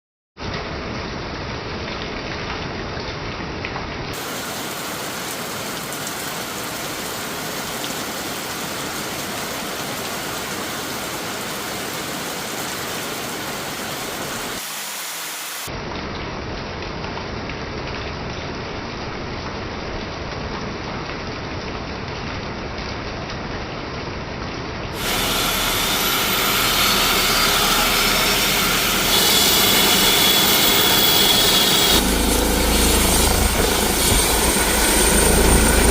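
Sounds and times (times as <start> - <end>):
helicopter turbine whine: 4.2 - 15.4, 25.0 - 35.9
rain hissing: 4.2 - 15.9, 24.9 - 35.9.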